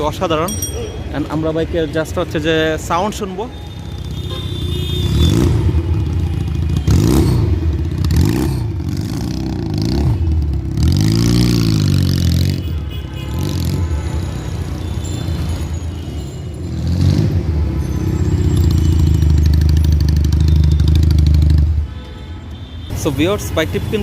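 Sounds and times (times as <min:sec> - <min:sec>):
motorcycle engine revving: 0:04.0 - 0:12.7, 0:16.7 - 0:21.8.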